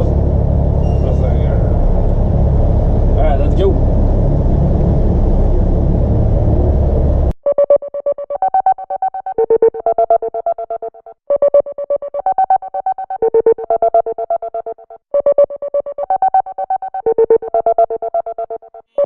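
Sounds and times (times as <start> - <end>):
vehicle rumble on road: 0.0 - 7.3.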